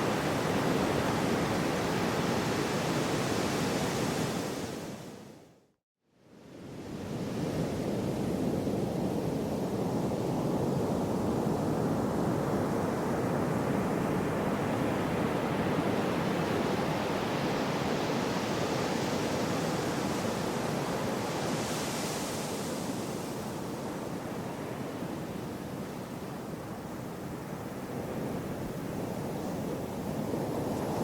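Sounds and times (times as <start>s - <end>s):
gentle sea surf: 0.0s - 5.5s, 6.3s - 31.0s.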